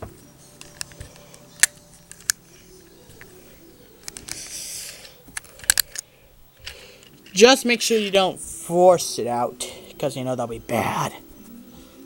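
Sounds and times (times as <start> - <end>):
plastic toy clicks: 0.6 - 2.4, 4.1 - 6.0.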